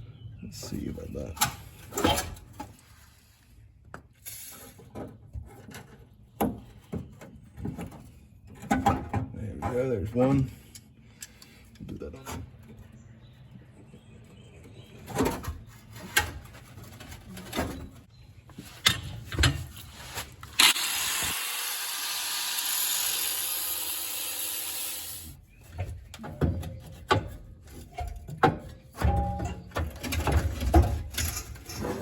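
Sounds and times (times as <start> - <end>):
metal knocks and clatter: 25.8 - 32.0.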